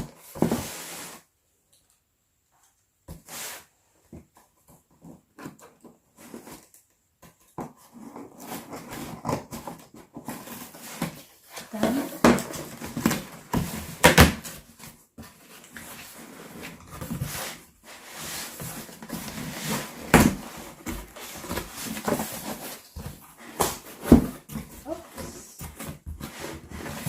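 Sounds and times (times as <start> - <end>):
cardboard box knocks and bumps: 7.5 - 17.6, 18.3 - 27.0.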